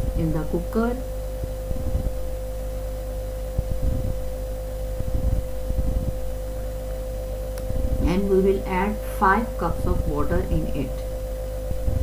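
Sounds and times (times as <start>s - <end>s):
faint low bumps: 0.0s - 8.8s
electrical hum: 0.0s - 12.0s
low rumble: 0.0s - 12.0s.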